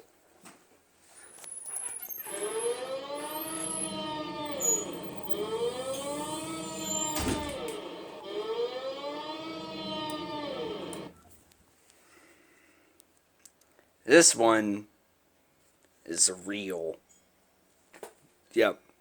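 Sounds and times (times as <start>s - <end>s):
siren wailing: 2.0s - 11.2s.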